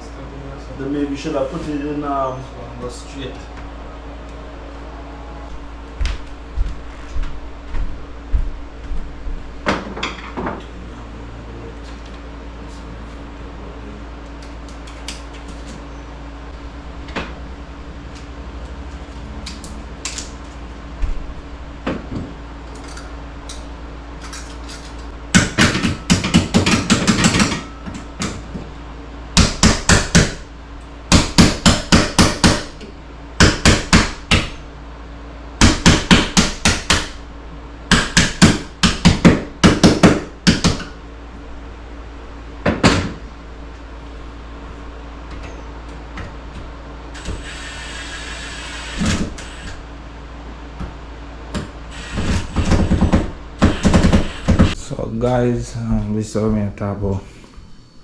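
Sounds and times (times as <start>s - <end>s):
impact driver hammering: 25.3s - 28.4s, 29.4s - 30.4s, 31.1s - 32.8s, 33.4s - 34.6s, 35.6s - 37.2s, 37.9s - 40.9s, 52.2s - 54.8s.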